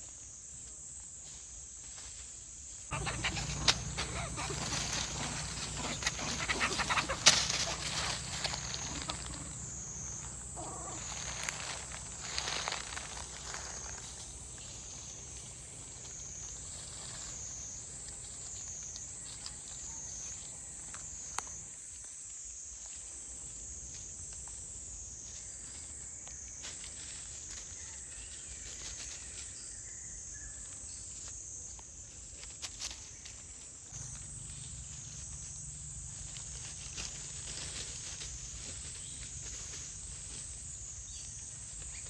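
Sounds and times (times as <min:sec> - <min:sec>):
high wavering insect drone: 0:02.9 - 0:21.6, 0:34.0 - 0:42.0.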